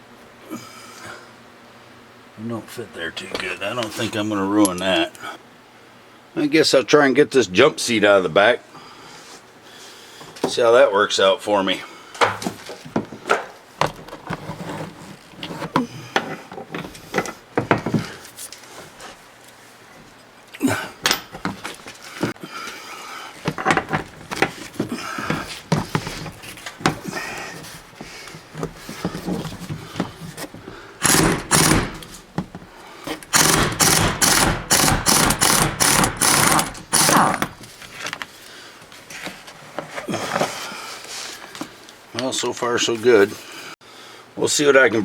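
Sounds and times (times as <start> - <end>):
tools clinking and knocking: 21.0 - 21.7, 23.5 - 27.2
impact wrench hammering: 31.0 - 32.6, 33.2 - 37.6.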